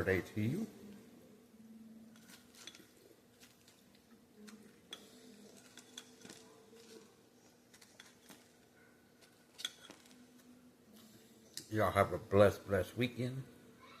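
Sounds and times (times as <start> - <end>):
faint low hum: 0.0 - 14.0
chewing crispy food: 2.2 - 10.5.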